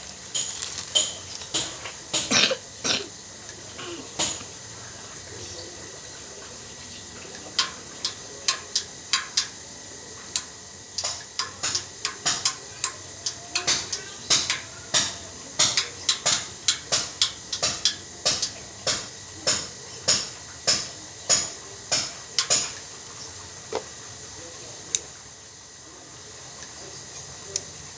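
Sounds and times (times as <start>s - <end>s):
hand tools clicking on metal: 0.0s - 2.5s.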